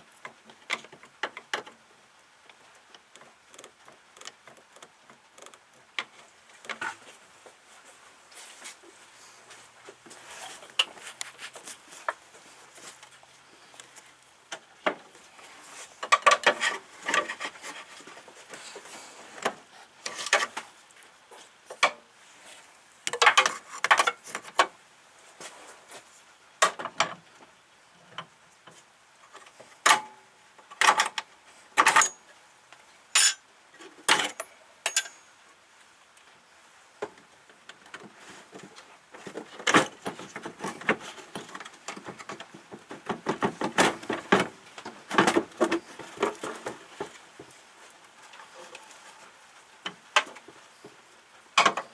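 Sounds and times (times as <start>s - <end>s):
metal tools clinking and scraping: 31.8s - 32.3s, 33.2s - 33.4s, 34.1s - 35.3s.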